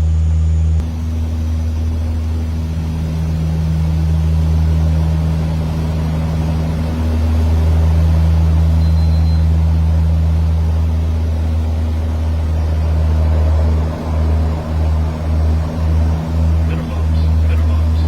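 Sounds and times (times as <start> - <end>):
turboprop engine drone in cabin: 0.0 - 18.0.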